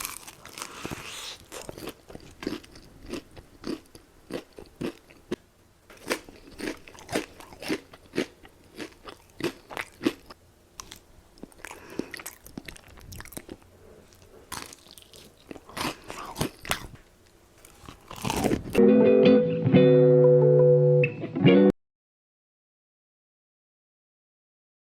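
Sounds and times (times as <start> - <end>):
chewing crunchy fried chicken: 0.0 - 18.8.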